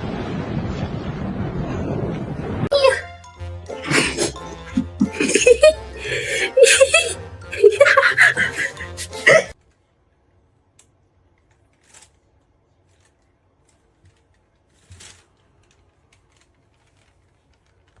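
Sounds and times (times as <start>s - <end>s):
faint short rustles: 12.8s - 18.0s.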